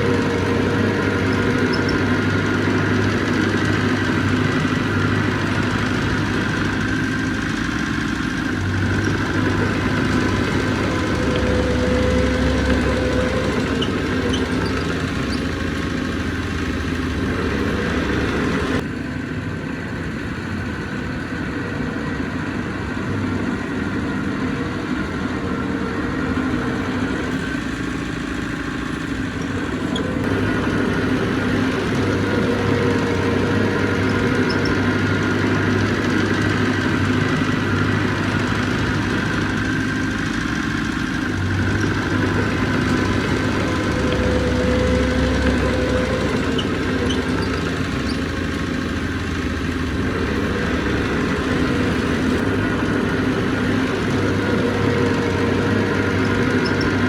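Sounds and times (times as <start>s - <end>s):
heavy machinery diesel engine: 0.0s - 57.0s.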